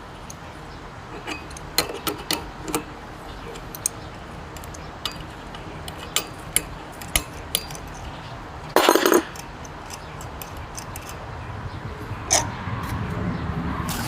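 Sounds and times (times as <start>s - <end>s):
metallic clicks of tools: 1.2s - 2.9s, 3.5s - 11.2s
metal parts clattering: 8.7s - 11.2s.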